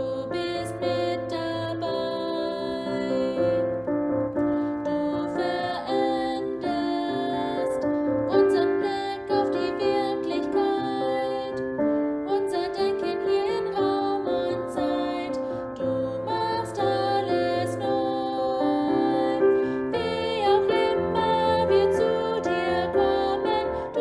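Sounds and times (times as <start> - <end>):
person singing a hymn: 0.0 - 24.0
piano accompaniment: 0.0 - 24.0.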